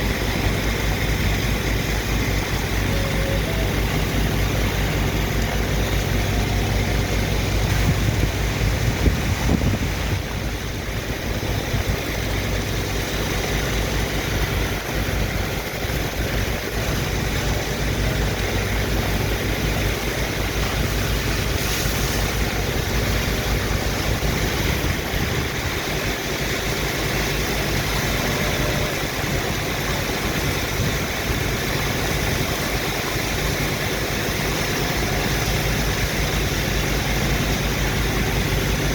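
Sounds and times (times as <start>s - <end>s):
constant rushing noise: 0.0s - 38.9s
dredge pump engine running: 0.0s - 38.9s.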